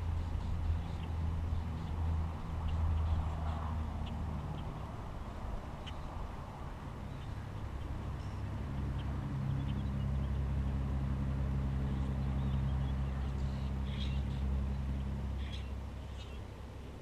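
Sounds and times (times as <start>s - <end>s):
vehicle engine running: 0.0s - 17.0s
bird chirps: 11.8s - 16.5s.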